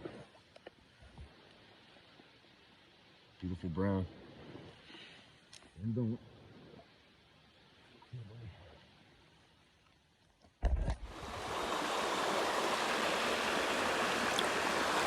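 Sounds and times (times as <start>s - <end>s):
stream water rushing: 10.9s - 15.0s.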